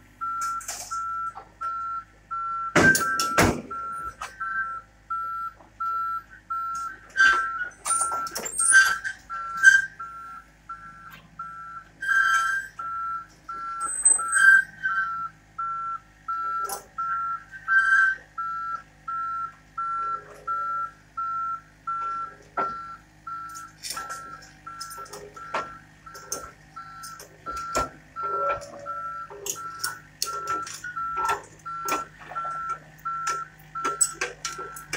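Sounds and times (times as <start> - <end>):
low engine hum: 0.0 - 34.9
excavator travel alarm beeping: 0.1 - 34.9
machine knocks and clanks: 2.8 - 3.8.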